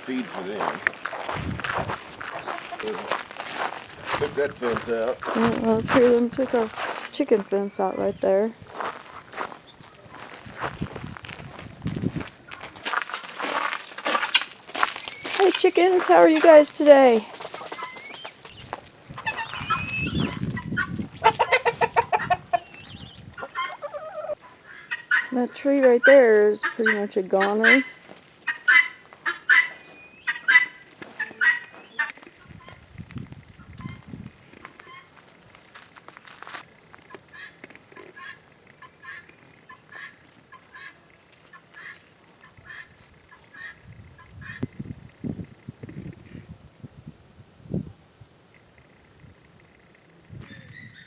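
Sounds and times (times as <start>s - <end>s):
chickens clucking: 0.0s - 8.2s, 13.4s - 32.8s
poultry calling: 0.0s - 10.4s, 12.5s - 32.8s, 37.1s - 44.7s
low crunching noise: 0.0s - 23.6s, 27.9s - 46.2s.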